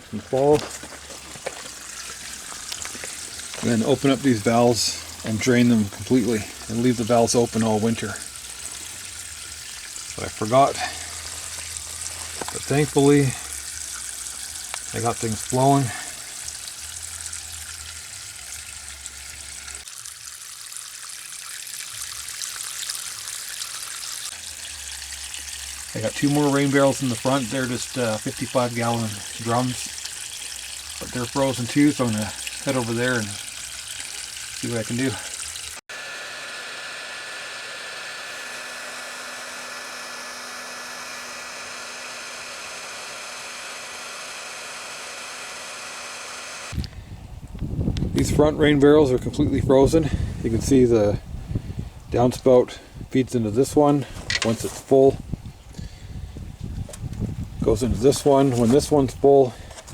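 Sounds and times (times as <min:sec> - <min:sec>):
blow dryer running: 0:00.0 - 0:19.8, 0:23.2 - 0:47.1
water trickling from drain valve: 0:00.0 - 0:35.8.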